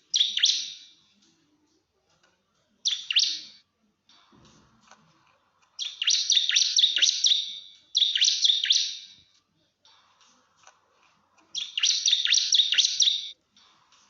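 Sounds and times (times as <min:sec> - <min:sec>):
bird singing fast chatter: 0:00.0 - 0:00.9, 0:02.8 - 0:03.6, 0:05.8 - 0:09.2, 0:11.5 - 0:13.4.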